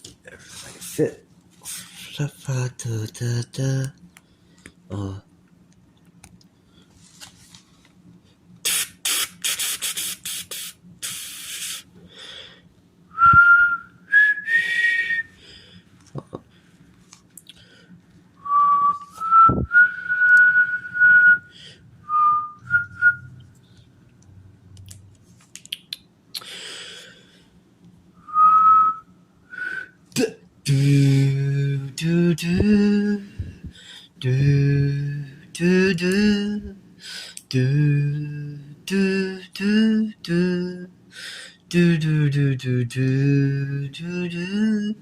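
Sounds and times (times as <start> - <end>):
man humming: 2.0 - 4.0, 4.9 - 5.3, 30.1 - 36.8, 37.4 - 41.0, 41.7 - 45.0
man whistling: 13.1 - 15.4, 18.4 - 23.5, 28.2 - 30.0.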